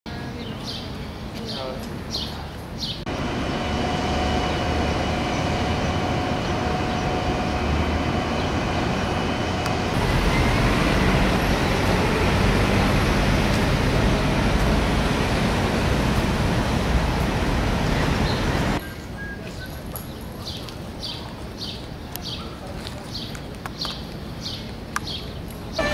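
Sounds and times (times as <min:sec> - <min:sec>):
city vehicle noise: 0:00.1 - 0:25.9
loud deep noise: 0:03.1 - 0:18.8.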